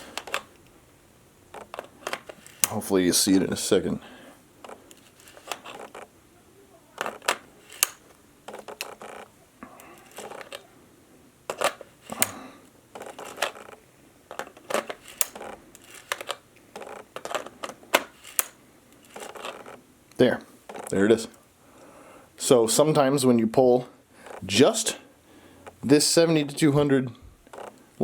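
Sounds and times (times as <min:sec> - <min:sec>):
camera gear handling: 0:00.0 - 0:00.7, 0:01.5 - 0:02.8, 0:04.6 - 0:06.1, 0:07.0 - 0:10.7, 0:11.5 - 0:19.8, 0:20.7 - 0:21.0, 0:27.5 - 0:27.8
lens twisting metallic clicks: 0:07.0 - 0:09.2, 0:14.3 - 0:19.7.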